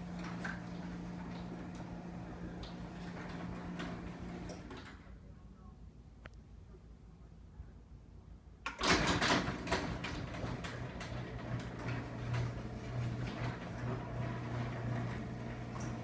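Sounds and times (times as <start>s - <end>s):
garage door opener motor hum: 0.0s - 5.1s, 8.7s - 16.0s
garage door rattling in tracks: 0.0s - 5.1s, 8.7s - 16.0s.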